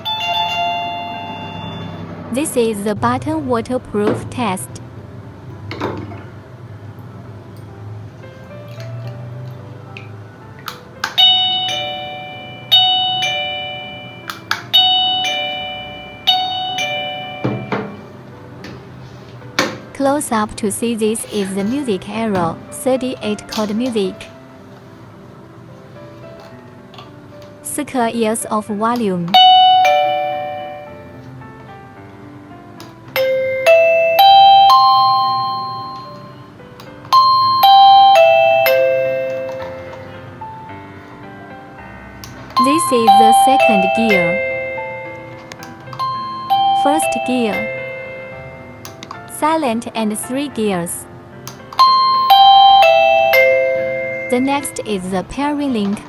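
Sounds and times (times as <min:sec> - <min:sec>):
doorbell ding-dong chime: 0:00.0 - 0:02.2, 0:11.1 - 0:18.2, 0:29.4 - 0:31.3, 0:33.2 - 0:40.4, 0:42.6 - 0:49.0, 0:51.8 - 0:55.2.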